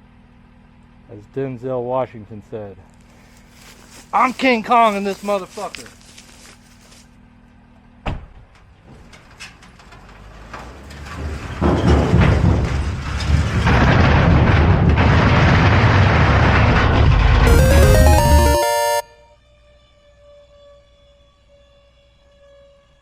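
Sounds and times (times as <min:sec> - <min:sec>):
heavy machinery rumbling and grinding: 0:09.0 - 0:17.5.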